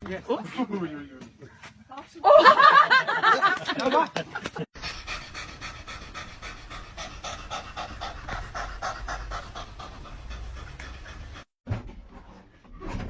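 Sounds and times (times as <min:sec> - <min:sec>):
dog panting: 0:04.8 - 0:11.6.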